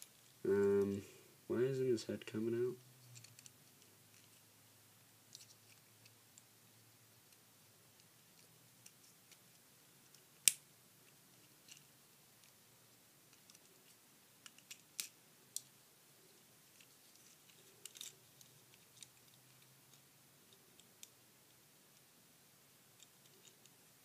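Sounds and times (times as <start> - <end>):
plastic toy parts clicking and snapping: 14.4 - 15.7, 17.5 - 20.0.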